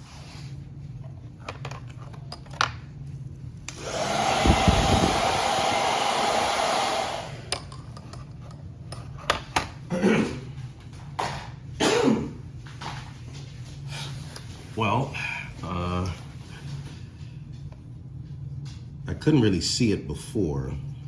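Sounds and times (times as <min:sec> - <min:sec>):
hair dryer blowing: 0:03.7 - 0:07.6.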